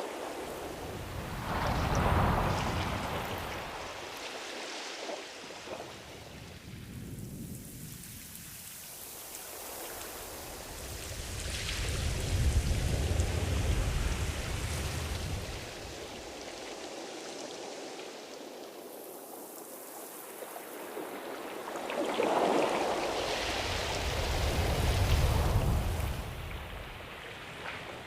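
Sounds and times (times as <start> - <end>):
ocean waves breaking: 0.0 - 18.2, 20.2 - 28.0.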